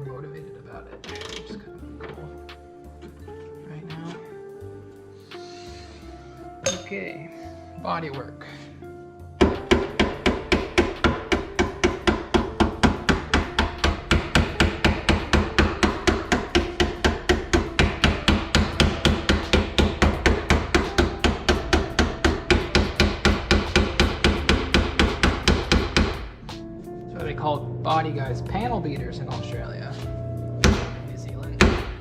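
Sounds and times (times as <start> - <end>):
hammer beating steel panel: 9.4 - 26.4, 30.6 - 32.0.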